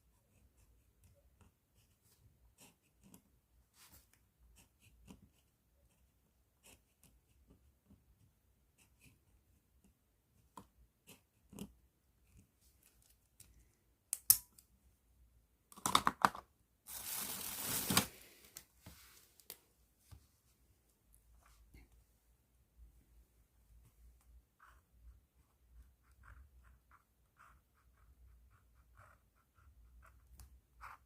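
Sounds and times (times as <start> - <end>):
plastic bag crinkling: 16.9 - 18.6.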